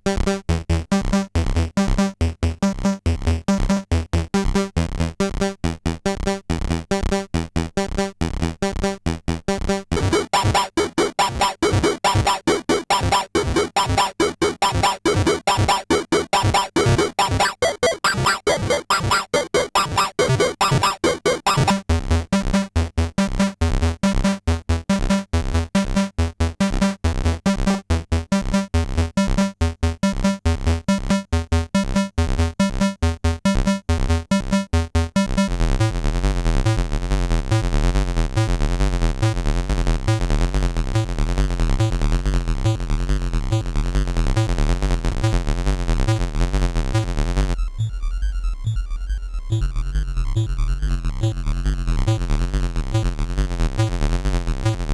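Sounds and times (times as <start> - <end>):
sequenced synthesizer pattern: 10.0 - 21.8.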